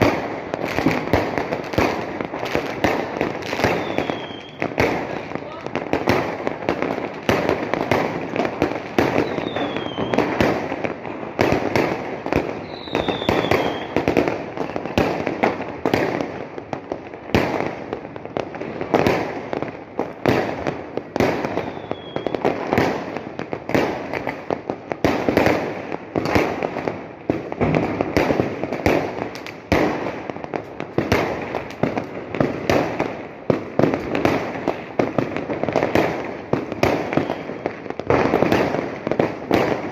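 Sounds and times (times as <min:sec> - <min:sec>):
fireworks bangs and crackles: 0:00.0 - 0:39.9
falling firework whistle: 0:03.6 - 0:04.7, 0:09.1 - 0:10.3, 0:12.5 - 0:14.1, 0:21.4 - 0:22.5, 0:37.0 - 0:37.8.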